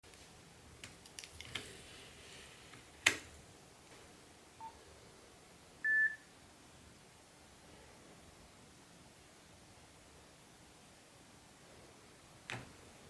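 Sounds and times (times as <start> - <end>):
phone beeps: 5.8 - 6.3.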